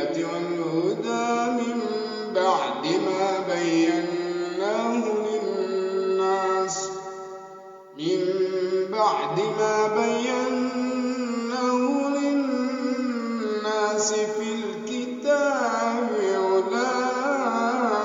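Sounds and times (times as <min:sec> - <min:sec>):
man chanting melodically: 0:00.0 - 0:18.0.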